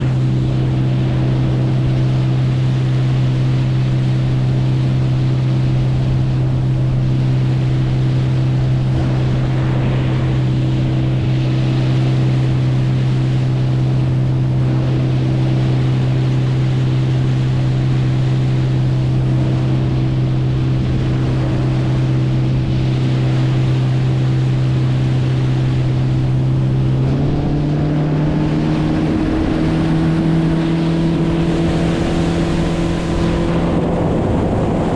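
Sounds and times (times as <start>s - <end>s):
boat motor droning: 0.0s - 34.9s
wind: 0.0s - 34.9s.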